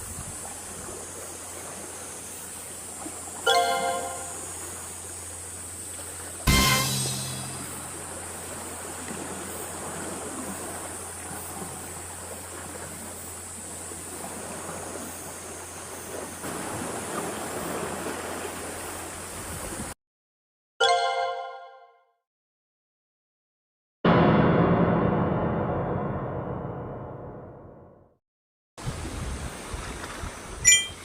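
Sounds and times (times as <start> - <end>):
sea waves on rocky shore: 5.5 - 19.9.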